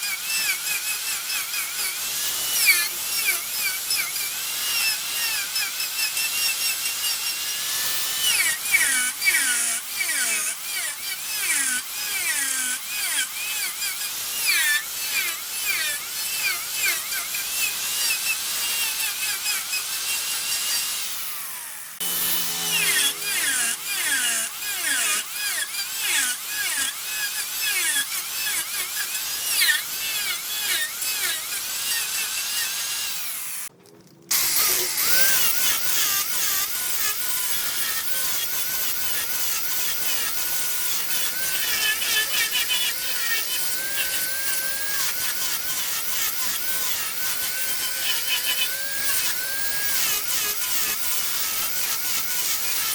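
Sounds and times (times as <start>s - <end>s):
wood lathe cutting hiss and squeal: 17.6s - 26.0s.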